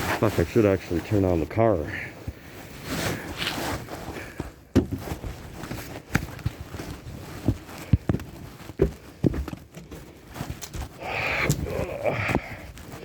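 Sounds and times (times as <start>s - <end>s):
fabric rubbing on microphone: 0.0s - 1.7s, 2.4s - 4.2s
footsteps in snow: 0.0s - 13.0s.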